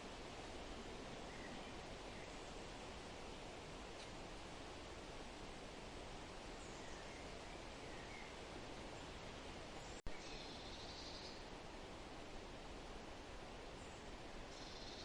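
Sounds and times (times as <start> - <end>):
faint rustling hiss: 0.0 - 15.0
soft bird chirps: 6.6 - 8.4, 9.8 - 11.5, 13.8 - 15.0.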